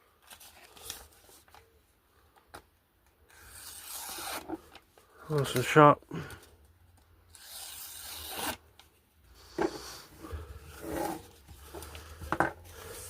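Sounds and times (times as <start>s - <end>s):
blade slicing paper: 3.3s - 4.5s, 7.3s - 8.6s.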